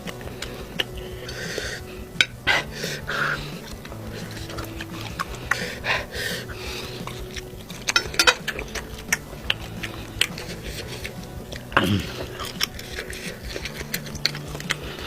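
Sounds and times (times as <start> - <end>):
person chewing with wet mouth sounds: 0.0 - 15.0
breathing: 0.3 - 7.4
sharp clicks and crunches: 3.3 - 15.0.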